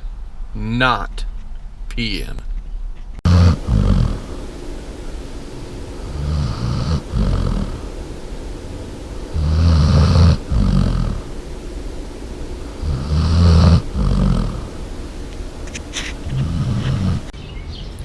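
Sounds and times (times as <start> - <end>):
dog snoring loudly: 3.2 - 4.4, 6.0 - 7.8, 9.3 - 11.3, 12.8 - 14.7, 16.3 - 17.3.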